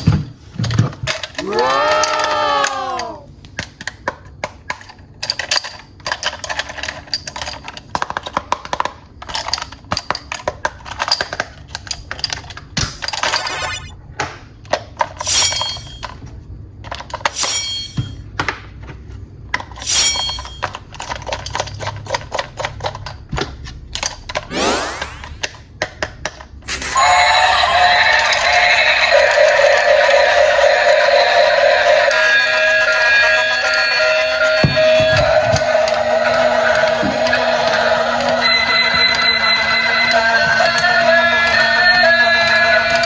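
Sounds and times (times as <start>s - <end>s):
plastic toys clicking and clattering: 0.0s - 13.7s, 14.6s - 17.5s, 18.2s - 43.0s
electronic toy sounds: 13.3s - 14.0s, 26.7s - 43.0s.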